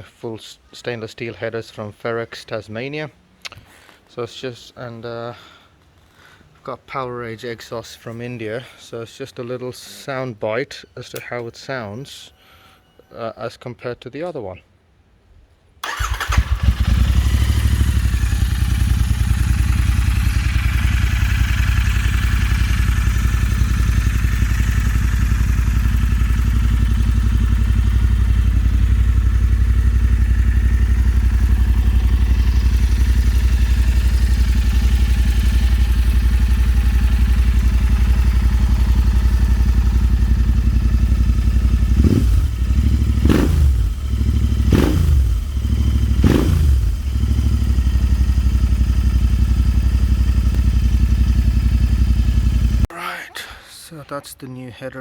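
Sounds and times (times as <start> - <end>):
motorcycle engine idling and revving: 15.8 - 52.9.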